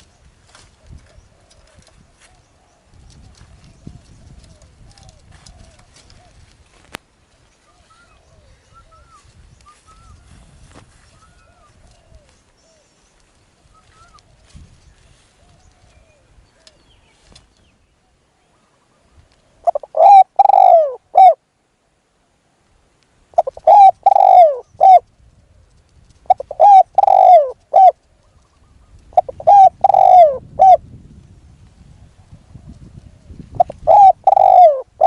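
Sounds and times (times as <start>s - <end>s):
dove cooing: 0.8s - 6.8s, 19.5s - 21.4s, 23.4s - 25.1s, 26.2s - 28.4s, 29.1s - 30.8s, 32.5s - 35.0s.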